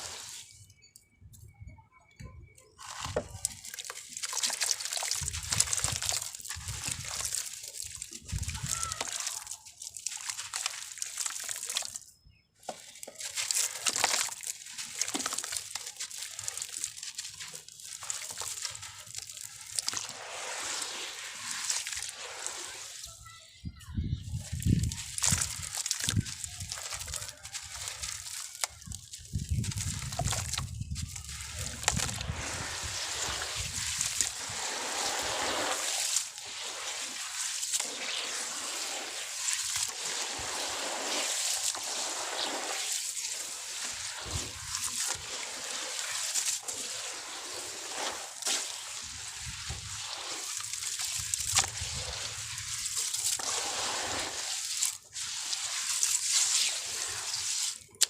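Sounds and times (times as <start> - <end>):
water sloshing: 12.6 - 23.1, 24.5 - 58.0
steady hiss of crumbling: 31.6 - 58.0.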